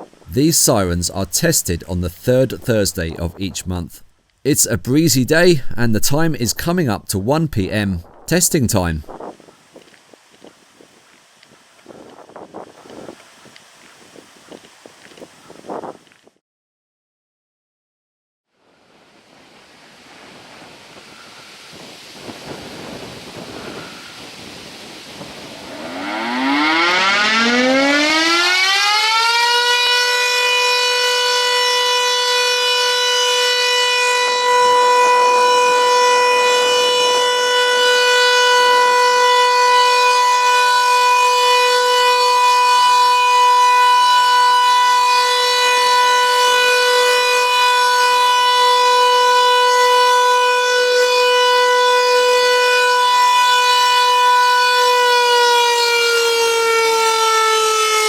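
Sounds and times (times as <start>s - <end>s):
electric siren winding up: 25.5s - 58.0s.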